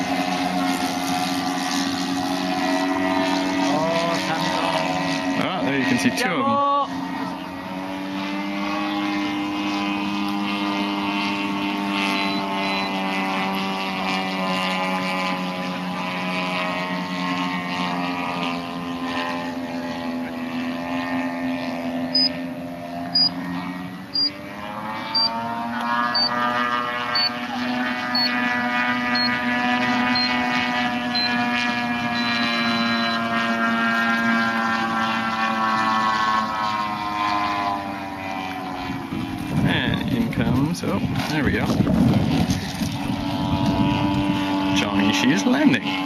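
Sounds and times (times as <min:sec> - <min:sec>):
model airplane engine buzzing: 0:00.0 - 0:46.0
short high peeps: 0:23.2 - 0:23.4.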